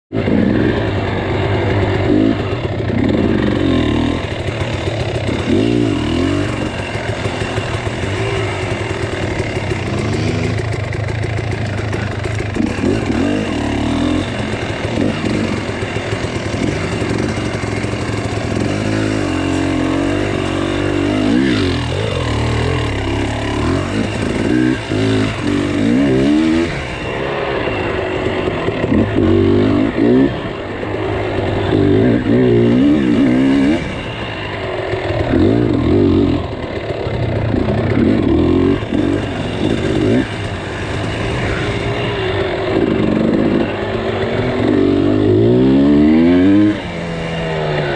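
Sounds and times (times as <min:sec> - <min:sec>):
engine revving: 0:00.1 - 0:47.9.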